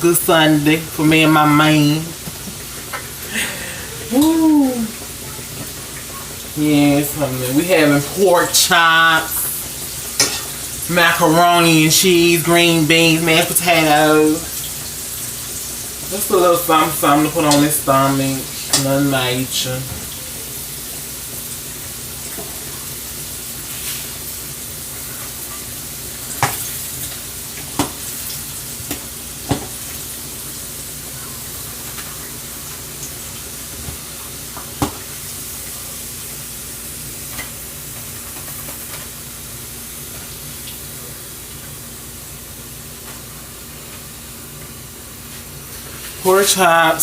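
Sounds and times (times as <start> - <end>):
meat sizzling in a pan: 0.2 - 47.0.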